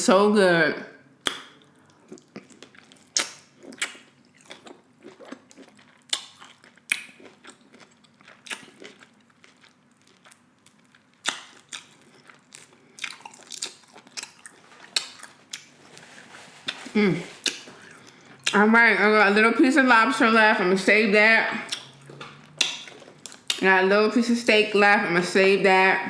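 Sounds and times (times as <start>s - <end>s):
chewing and biting food: 1.2s - 18.6s, 21.7s - 23.6s.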